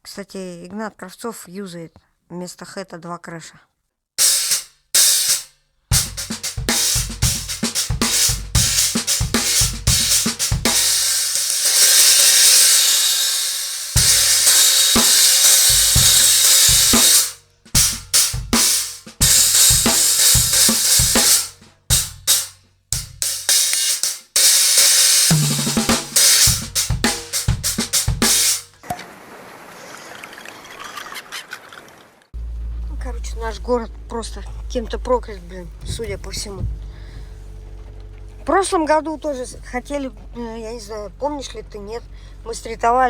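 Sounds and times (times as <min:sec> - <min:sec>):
drum kit playing: 0:04.2 - 0:28.8.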